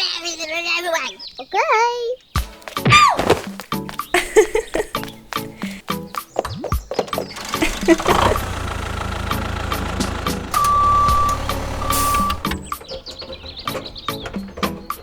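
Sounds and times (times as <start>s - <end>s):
vehicle engine running: 7.2s - 15.0s
long even beeps: 10.6s - 12.6s.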